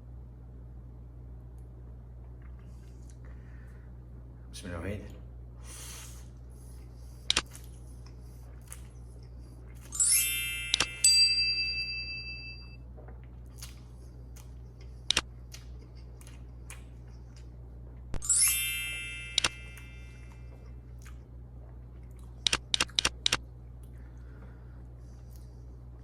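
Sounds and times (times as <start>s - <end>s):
bright shimmering chime: 9.9s - 12.8s, 18.2s - 20.4s
sharp clicks: 19.4s - 19.6s, 22.4s - 23.4s.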